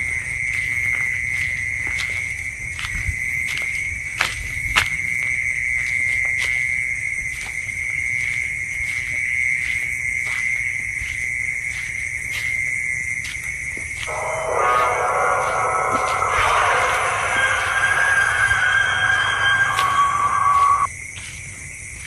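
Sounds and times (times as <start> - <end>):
crickets chirring: 5.2 - 22.0
loud rushing noise: 14.1 - 20.9.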